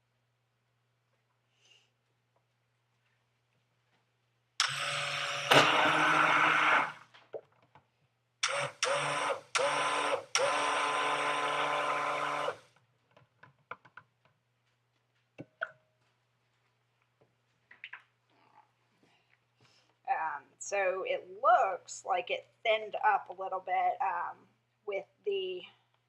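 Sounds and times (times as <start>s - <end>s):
stick blender whirring: 4.6s - 7.1s, 8.4s - 12.7s.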